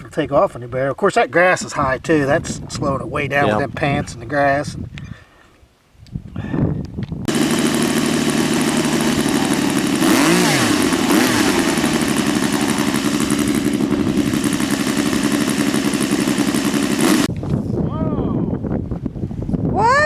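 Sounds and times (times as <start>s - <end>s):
model airplane motor running: 7.3s - 17.3s.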